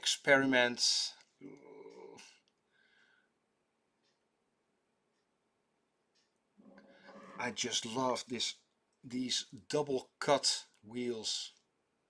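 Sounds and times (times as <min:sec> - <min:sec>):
faint tick: 0:04.0 - 0:04.3, 0:06.1 - 0:06.4.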